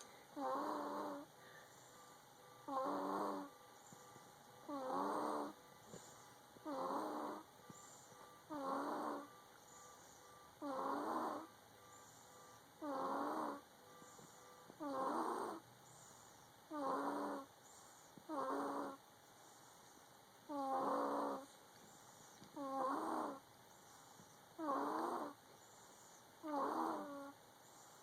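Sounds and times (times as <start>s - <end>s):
baby snoring: 0.0s - 1.3s, 2.6s - 3.6s, 4.6s - 9.3s, 10.6s - 11.5s, 12.8s - 16.0s, 16.7s - 19.0s, 20.5s - 21.6s, 22.2s - 28.0s
quiet breathing: 0.0s - 28.0s.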